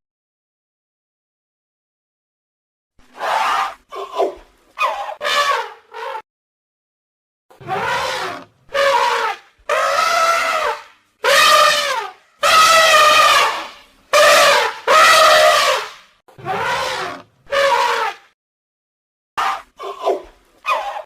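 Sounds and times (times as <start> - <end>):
elephant trumpeting: 3.2 - 6.2, 7.6 - 18.2, 19.4 - 21.0.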